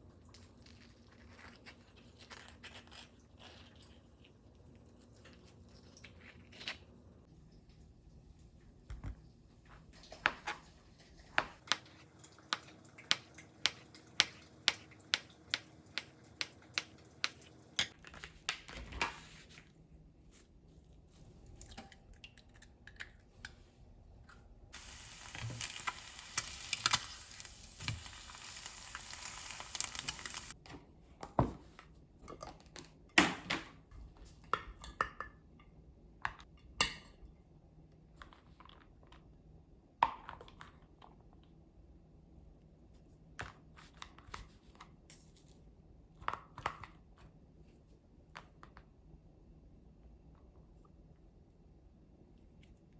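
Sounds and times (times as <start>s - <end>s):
food sizzling: 11.6s - 18.0s, 24.8s - 30.6s.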